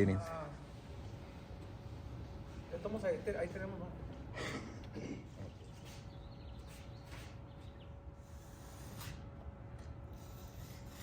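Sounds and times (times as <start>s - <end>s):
thin steady hum: 0.0s - 11.0s.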